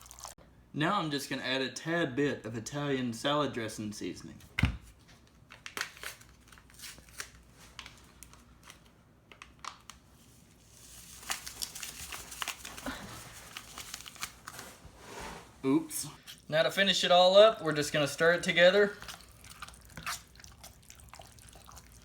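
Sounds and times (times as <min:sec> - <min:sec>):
packet rustling: 0:05.4 - 0:15.0
packet crinkling and tearing: 0:05.5 - 0:14.8.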